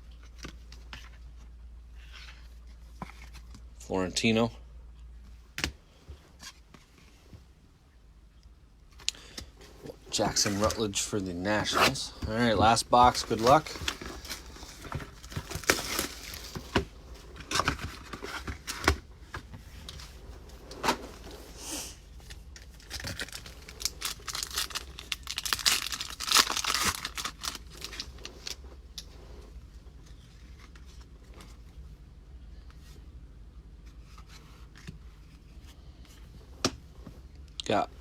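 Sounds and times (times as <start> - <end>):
card packaging tearing and crinkling: 10.2 - 19.0, 22.3 - 28.6.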